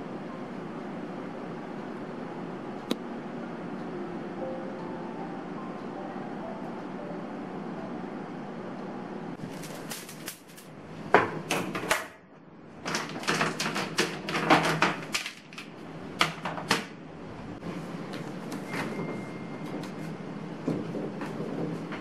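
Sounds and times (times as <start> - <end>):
household objects clicking and knocking: 12.8 - 17.0, 20.6 - 22.0.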